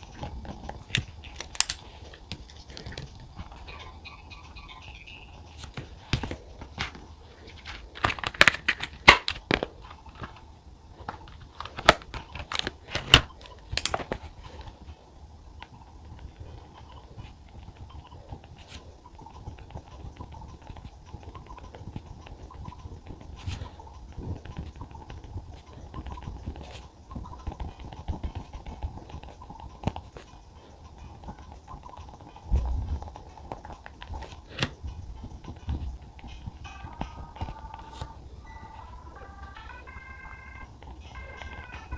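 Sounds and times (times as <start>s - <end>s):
paper rustling and clicks: 5.6s - 10.4s.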